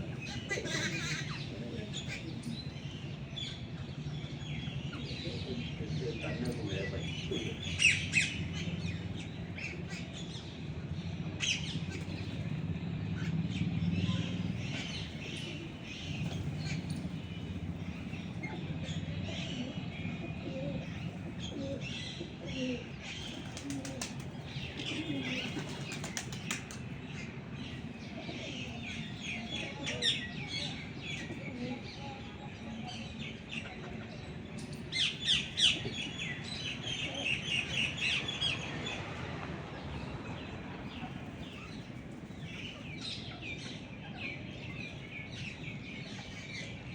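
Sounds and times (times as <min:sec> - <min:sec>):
birds chirping: 0:00.0 - 0:46.9
bird wings flapping: 0:23.3 - 0:26.8.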